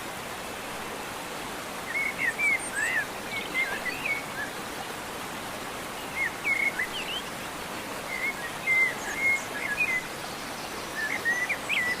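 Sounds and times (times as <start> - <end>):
hiss of rain or running water: 0.0 - 12.0
songbird singing: 1.9 - 4.6, 6.0 - 7.3, 8.1 - 12.0.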